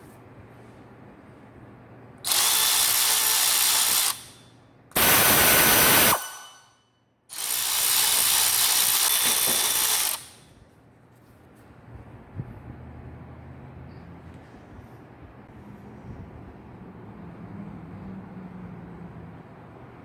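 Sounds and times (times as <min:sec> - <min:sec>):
cordless ratchet running: 0:02.3 - 0:04.4, 0:07.3 - 0:10.4.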